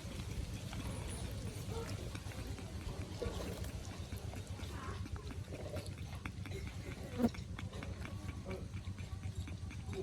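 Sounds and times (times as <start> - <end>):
puppies chewing and smacking: 0.0 - 10.0.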